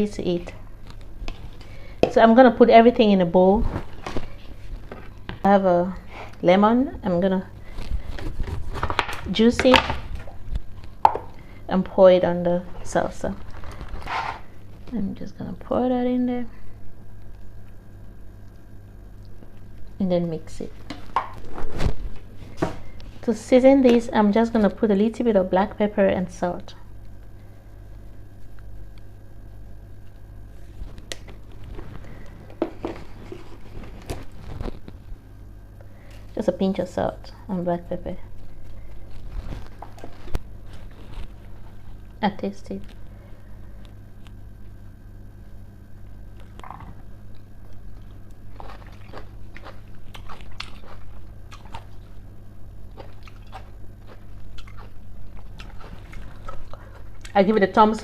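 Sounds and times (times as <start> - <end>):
low steady hum: 0.0 - 58.0
person chewing crunchy food: 38.3 - 42.2, 46.3 - 57.4.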